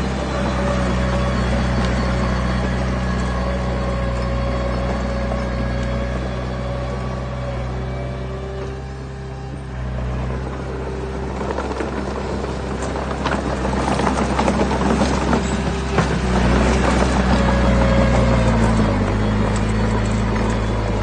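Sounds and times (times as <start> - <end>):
diesel machinery engine running: 0.0 - 21.0.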